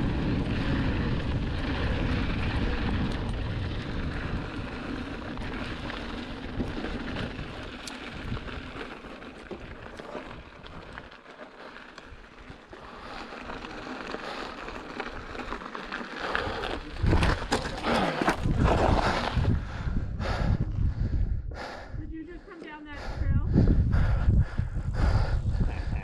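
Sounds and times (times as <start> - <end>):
wind on microphone: 0.0 - 8.9, 16.4 - 22.4, 23.0 - 26.0
bike tyres rolling on dirt: 0.0 - 22.2.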